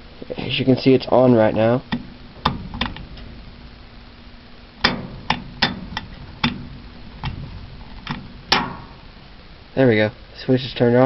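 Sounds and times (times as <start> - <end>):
furnace humming: 0.0 - 11.0.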